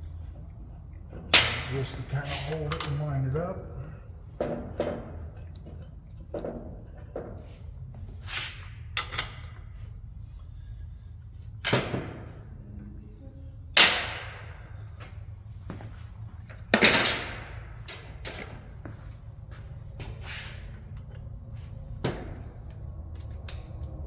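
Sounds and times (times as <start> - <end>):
metallic clanks of tools: 1.3 - 3.4, 16.7 - 18.6.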